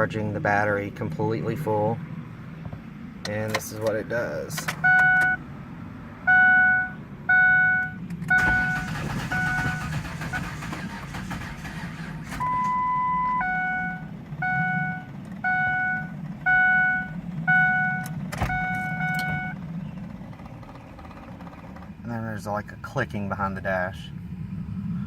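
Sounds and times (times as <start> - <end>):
sharp clicks behind dash: 2.6 - 5.4, 7.8 - 9.1, 15.1 - 15.4, 18.0 - 22.0
dashboard warning chime beeping: 4.8 - 5.4, 6.3 - 10.6, 12.4 - 19.6
longer higher warning tone: 12.4 - 19.6.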